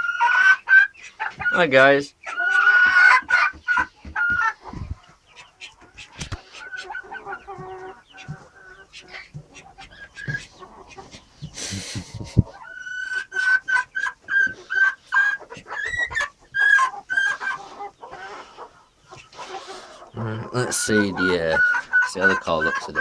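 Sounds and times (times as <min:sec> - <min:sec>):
chickens clucking: 0:00.0 - 0:23.0
brief rustle: 0:05.6 - 0:06.6.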